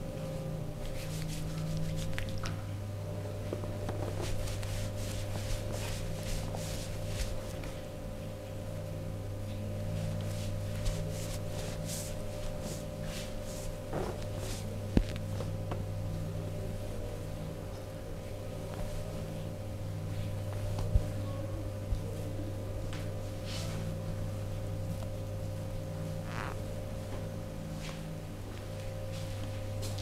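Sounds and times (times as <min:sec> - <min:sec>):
steady low hum: 0:00.0 - 0:30.0
hands rubbing over clothing: 0:00.8 - 0:02.4, 0:03.9 - 0:07.8, 0:10.0 - 0:14.8.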